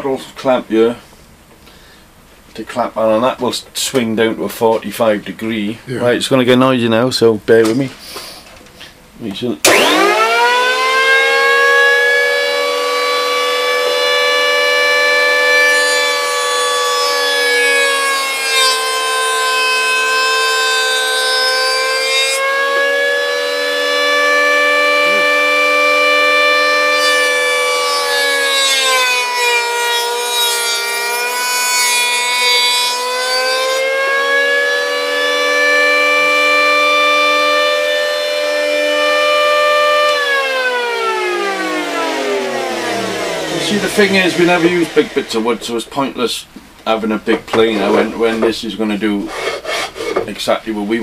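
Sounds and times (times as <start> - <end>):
electric motor whining: 9.7 - 18.9, 22.4 - 28.5, 33.8 - 45.7
blade rasping through wood: 49.2 - 50.3.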